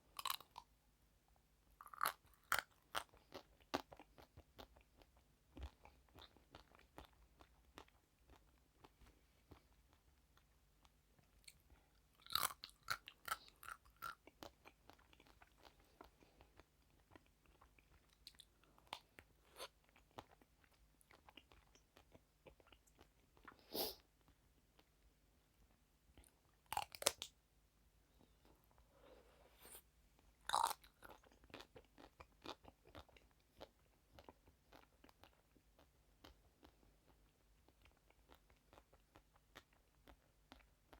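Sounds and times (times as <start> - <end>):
crunchy sweets crunching: 0.2 - 0.6, 1.8 - 4.7, 12.2 - 20.4, 30.5 - 35.4
soft chewing clicks: 1.8 - 27.4, 29.7 - 40.9.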